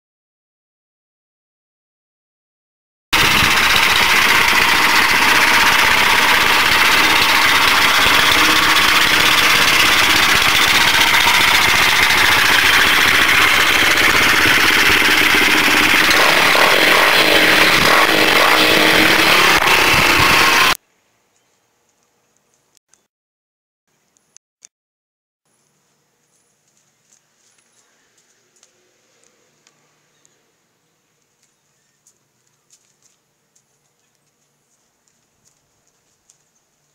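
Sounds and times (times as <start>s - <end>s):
motorbike engine running: 3.2s - 20.8s.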